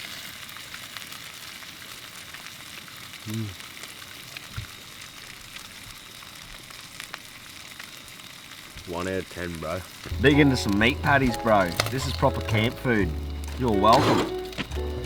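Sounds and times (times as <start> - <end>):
meat patties sizzling: 0.0 - 15.0.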